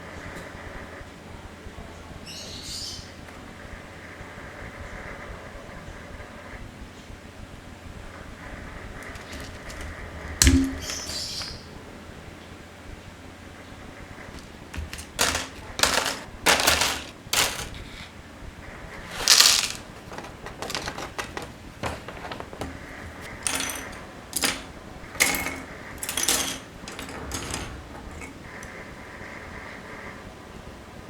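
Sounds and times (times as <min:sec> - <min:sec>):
plastic model parts clicking: 0:19.1 - 0:22.8.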